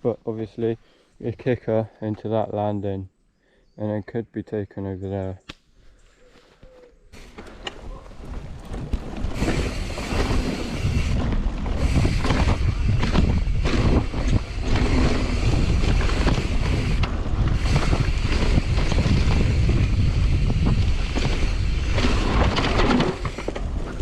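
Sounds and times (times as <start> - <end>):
wind buffeting microphone: 7.8 - 24.0
bike knocks and rattles: 8.2 - 24.0.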